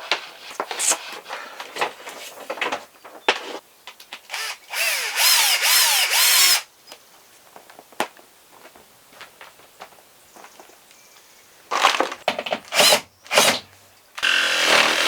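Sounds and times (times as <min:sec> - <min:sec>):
power drill motor whirring: 0:04.3 - 0:06.7, 0:12.7 - 0:13.6, 0:14.2 - 0:15.0.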